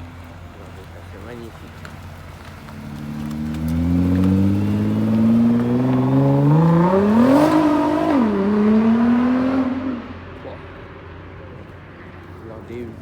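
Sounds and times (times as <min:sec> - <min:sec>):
car engine accelerating: 0:00.8 - 0:10.5.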